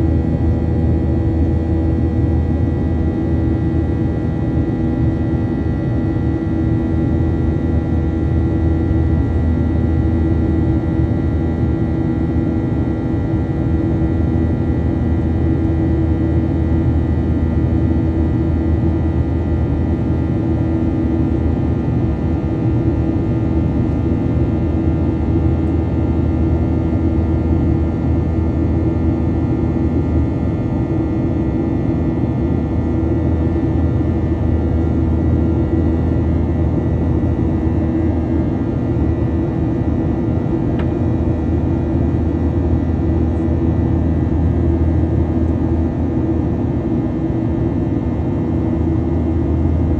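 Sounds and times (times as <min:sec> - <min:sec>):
airplane engines droning: 0:29.4 - 0:49.9.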